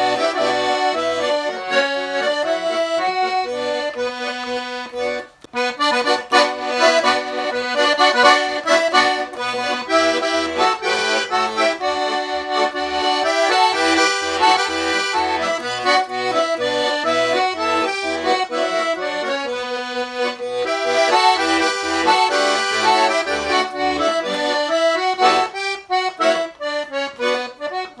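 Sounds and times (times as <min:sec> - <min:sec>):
button accordion folk tune: 0:00.0 - 0:28.0.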